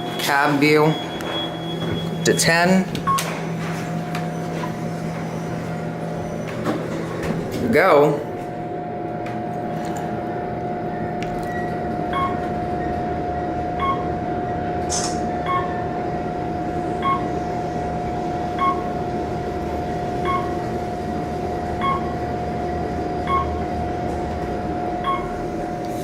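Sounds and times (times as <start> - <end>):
elevator floor beep: 0.0 - 7.4, 10.9 - 15.9, 16.9 - 17.4, 18.4 - 19.1, 19.8 - 20.8, 21.6 - 22.4, 23.1 - 25.4
elevator ride noise: 0.0 - 26.0.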